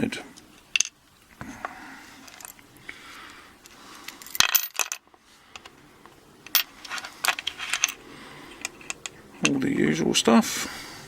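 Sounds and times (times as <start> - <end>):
metal lock parts clinking: 0.0 - 1.2, 2.2 - 2.7, 3.6 - 9.7
handling rustle: 0.0 - 11.0.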